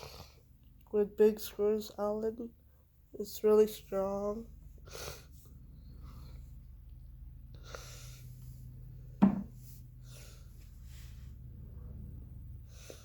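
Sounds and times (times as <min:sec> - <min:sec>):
steady low hum: 0:00.0 - 0:13.0
sharp knock: 0:09.2 - 0:09.5
faint rustles: 0:09.5 - 0:11.9.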